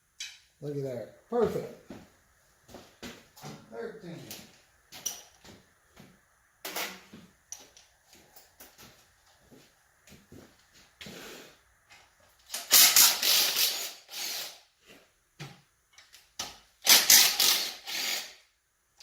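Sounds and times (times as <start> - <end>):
cordless drill spinning: 12.5 - 14.6, 16.9 - 18.4.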